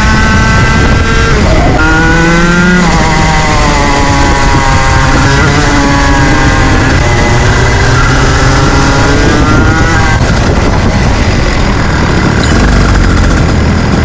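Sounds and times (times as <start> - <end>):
two-stroke kart engine racing: 0.0 - 14.0.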